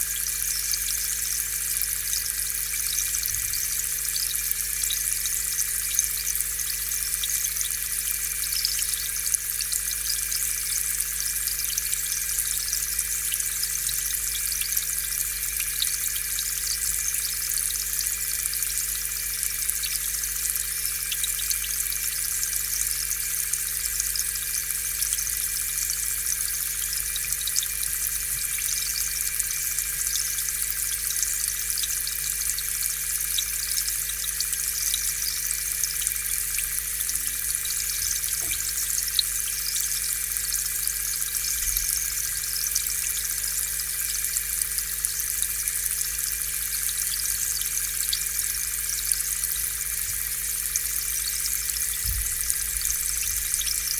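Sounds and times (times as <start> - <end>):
air bubbles hissing in water: 0.0 - 53.9
air pump hum: 33.2 - 39.7, 49.8 - 53.9.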